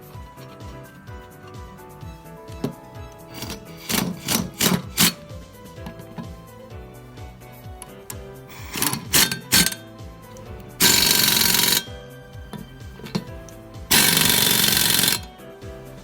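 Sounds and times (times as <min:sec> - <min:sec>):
background music: 0:00.0 - 0:16.0
impact wrench hammering: 0:02.5 - 0:06.6, 0:07.8 - 0:15.4.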